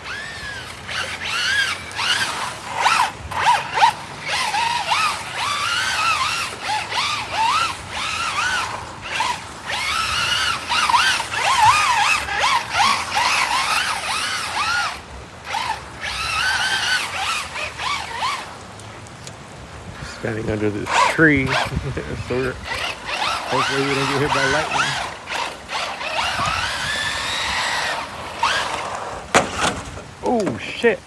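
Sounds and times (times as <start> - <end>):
electric motor whining: 0.0 - 30.6
rain hiss: 13.1 - 24.1, 28.0 - 31.0.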